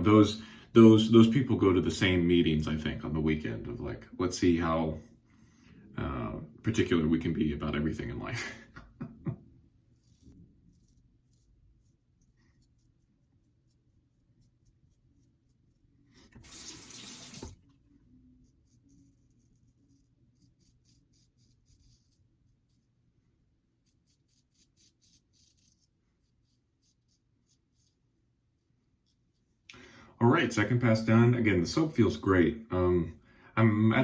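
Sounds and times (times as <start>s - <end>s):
sink tap running: 16.3s - 17.6s.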